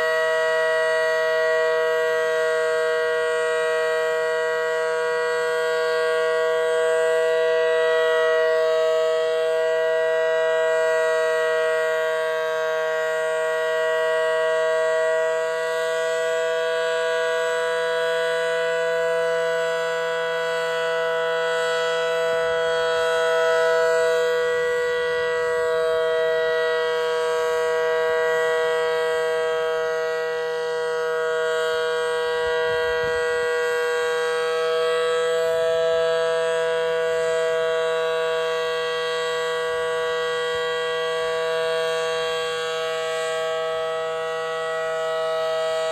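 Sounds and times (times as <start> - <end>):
warning siren two-note chord: 0.0 - 45.9.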